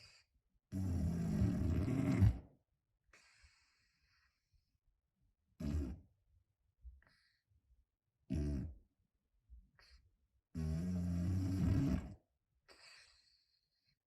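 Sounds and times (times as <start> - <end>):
faint hissing breaths: 0.0 - 0.4, 3.1 - 4.7
cat snoring: 0.7 - 2.4, 5.6 - 6.0, 8.3 - 8.8, 10.6 - 12.2.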